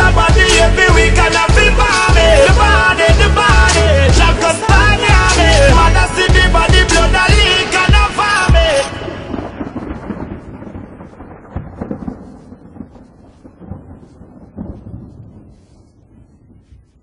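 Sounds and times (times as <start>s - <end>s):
reggae beat: 0.0s - 9.1s
rumbling thunder: 5.7s - 16.7s
rain: 7.6s - 17.0s.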